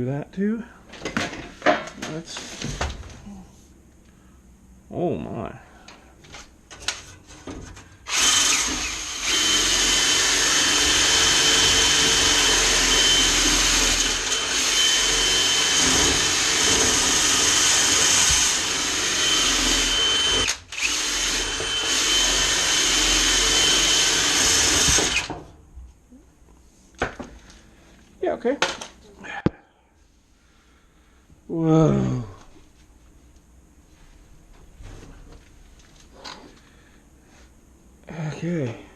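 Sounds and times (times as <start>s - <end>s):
electric motor tool whining: 8.1s - 25.3s.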